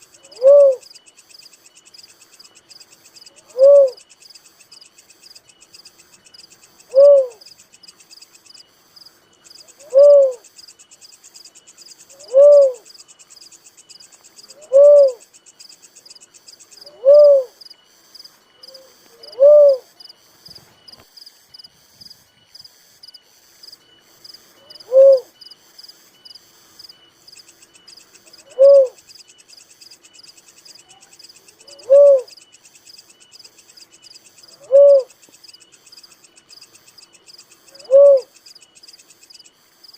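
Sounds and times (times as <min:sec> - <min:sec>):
dove hooting: 0:00.0 - 0:01.2, 0:02.9 - 0:04.5, 0:05.4 - 0:08.0, 0:09.5 - 0:10.6, 0:12.0 - 0:15.6, 0:16.2 - 0:17.6, 0:18.4 - 0:20.1, 0:24.5 - 0:25.4, 0:27.7 - 0:29.3, 0:30.0 - 0:38.7
high insect buzz: 0:00.0 - 0:39.9.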